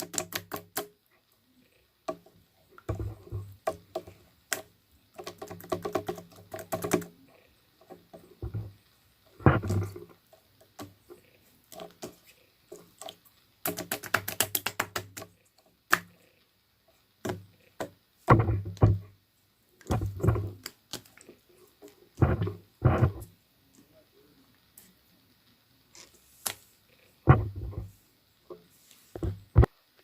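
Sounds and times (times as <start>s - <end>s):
knocks and thumps: 2.1s - 4.2s, 7.8s - 8.8s, 9.4s - 12.8s, 17.2s - 19.2s, 19.8s - 20.7s, 22.2s - 23.3s, 27.2s - 29.8s.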